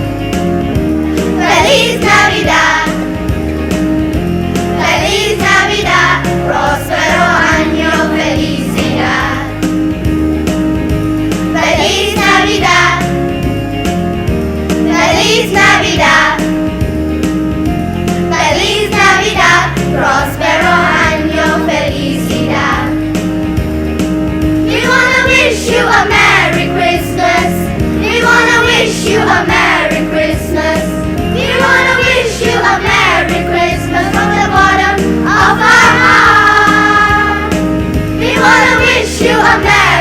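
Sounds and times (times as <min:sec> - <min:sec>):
instrumental accompaniment with beat: 0:00.0 - 0:40.0
children's choir singing: 0:01.2 - 0:03.1, 0:04.8 - 0:09.6, 0:11.5 - 0:13.2, 0:14.9 - 0:16.5, 0:18.3 - 0:23.0, 0:24.7 - 0:40.0.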